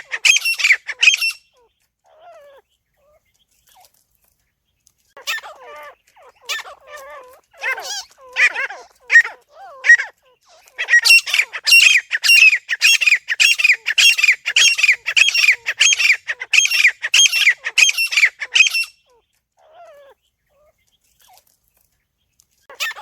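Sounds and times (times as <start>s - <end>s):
francolin calling harshly: 0.0s - 2.6s, 5.2s - 20.2s.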